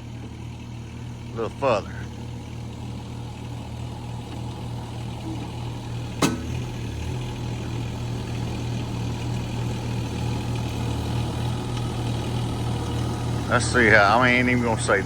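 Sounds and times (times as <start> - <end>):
skid steer engine running: 0.0 - 15.0
sharp knock: 6.2 - 6.7.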